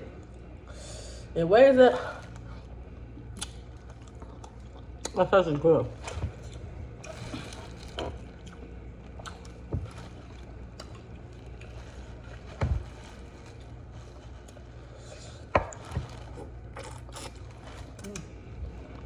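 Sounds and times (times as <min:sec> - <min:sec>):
steady low hum: 0:00.0 - 0:19.0
eating sounds: 0:03.3 - 0:05.2, 0:06.0 - 0:19.0.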